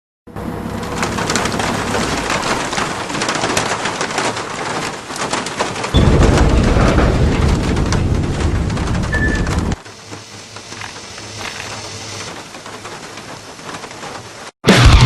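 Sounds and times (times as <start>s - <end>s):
rain-like patter: 0.4s - 14.6s
heavy low rumble: 6.0s - 9.8s.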